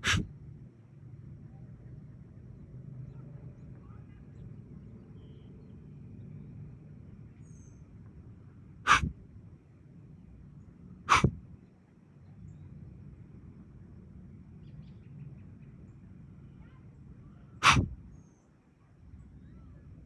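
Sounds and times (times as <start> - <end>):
deer snorting: 0.0 - 0.3, 8.9 - 9.1, 11.1 - 11.4, 17.6 - 17.9.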